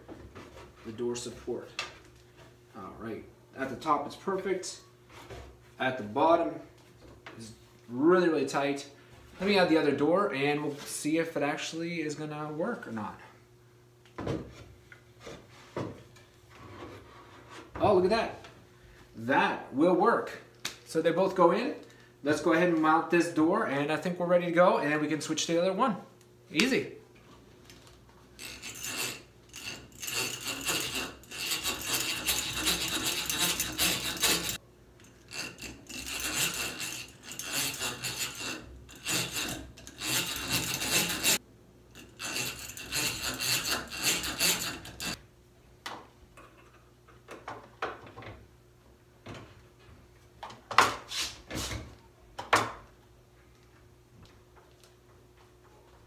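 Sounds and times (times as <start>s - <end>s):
hand tools grinding wood: 28.4s - 41.4s, 42.0s - 45.2s.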